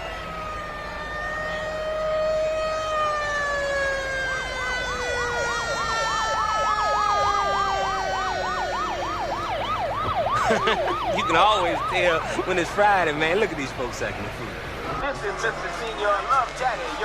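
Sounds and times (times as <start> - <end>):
yelp siren warbling: 0.0 - 12.7
wailing siren: 0.0 - 12.9.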